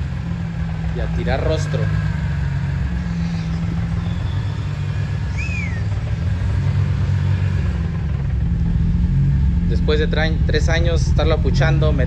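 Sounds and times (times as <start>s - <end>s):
car engine idling: 0.0s - 12.0s
short chirp: 3.2s - 6.0s.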